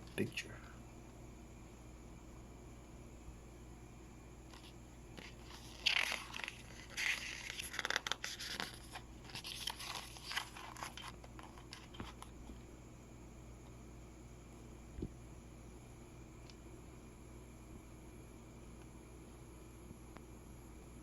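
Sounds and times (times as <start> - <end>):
paper rustling and crinkling: 4.5 - 12.4.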